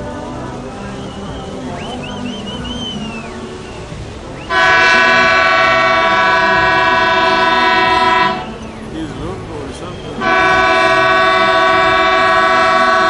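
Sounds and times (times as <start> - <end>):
ship's horn blast: 0.0 - 13.0.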